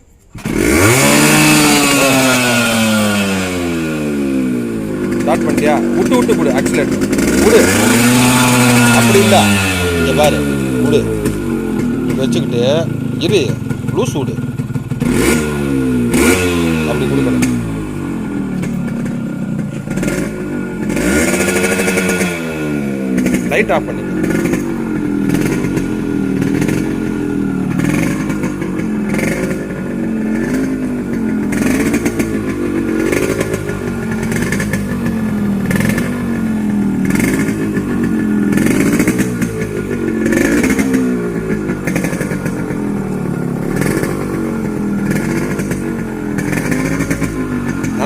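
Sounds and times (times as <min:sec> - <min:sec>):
motorcycle engine revving: 0:00.0 - 0:48.0.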